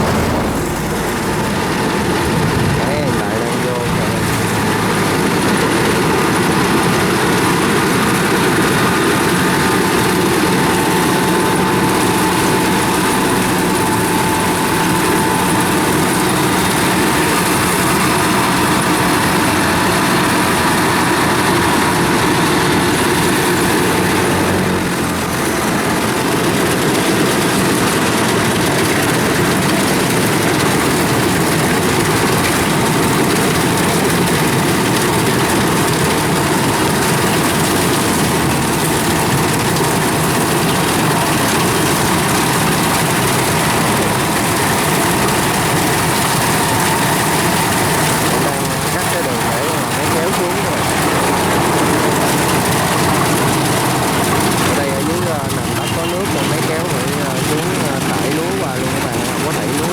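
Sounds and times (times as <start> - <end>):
heavy machinery engine running: 0.0 - 59.9.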